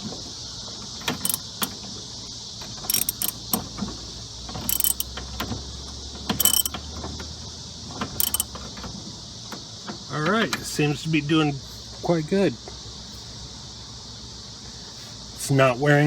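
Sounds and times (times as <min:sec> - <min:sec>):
socket ratchet clicking: 0:01.1 - 0:01.7, 0:02.9 - 0:03.6, 0:04.7 - 0:05.1, 0:06.4 - 0:06.8, 0:08.2 - 0:08.5.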